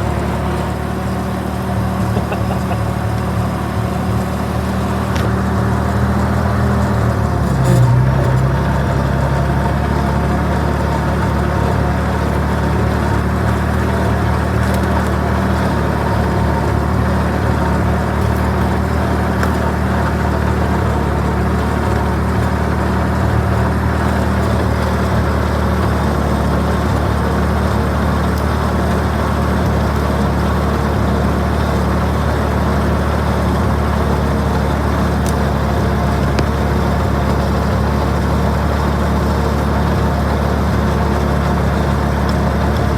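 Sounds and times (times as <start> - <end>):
tow tug engine running: 0.0 - 42.9.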